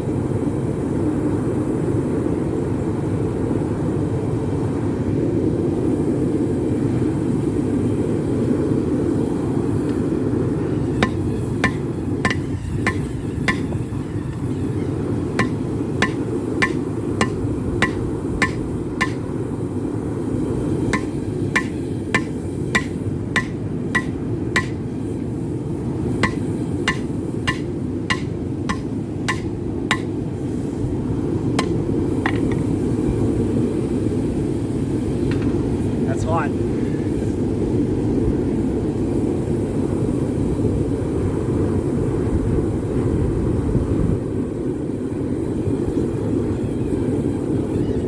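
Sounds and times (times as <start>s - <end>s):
hammer striking metal on anvil: 11.0s - 14.8s, 15.4s - 19.3s, 20.9s - 25.0s, 26.2s - 30.3s, 31.6s - 32.6s.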